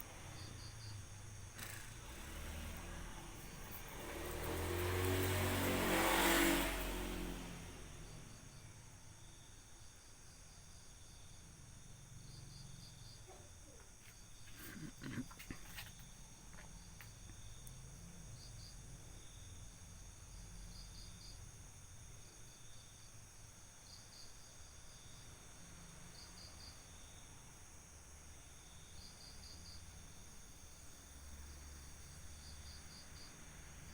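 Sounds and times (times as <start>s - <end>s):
crickets chirping: 0.0s - 33.9s
high-pitched insect drone: 1.6s - 8.0s.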